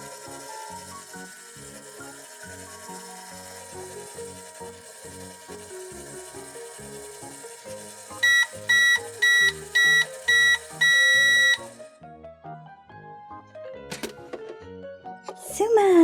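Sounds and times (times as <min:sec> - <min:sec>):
microwave beeping: 0:00.0 - 0:11.9
light background music: 0:00.0 - 0:16.0.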